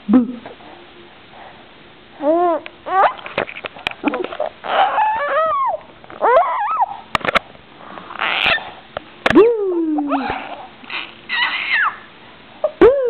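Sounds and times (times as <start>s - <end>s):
baby squealing and laughing: 2.2s - 3.3s, 4.2s - 7.0s, 8.1s - 8.8s, 10.0s - 12.8s.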